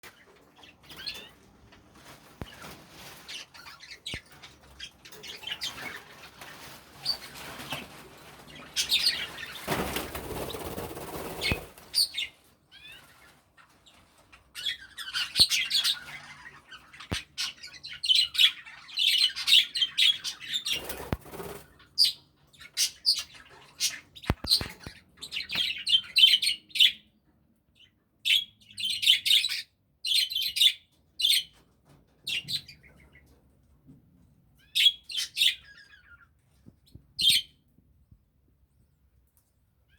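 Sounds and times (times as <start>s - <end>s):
budgerigars chirping: 0.2s - 1.3s, 10.3s - 27.0s, 34.6s - 36.2s
wings flapping: 5.9s - 12.0s, 20.7s - 21.8s.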